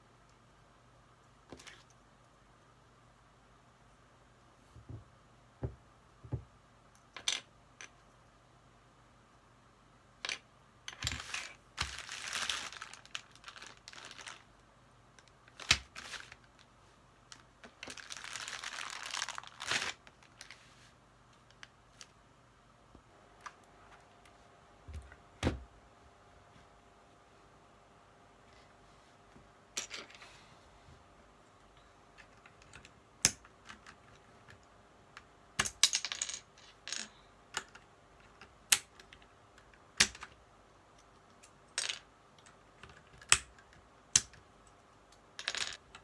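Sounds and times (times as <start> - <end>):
plastic packaging crinkling and tearing: 11.2 - 14.5, 15.6 - 16.5, 17.7 - 20.5.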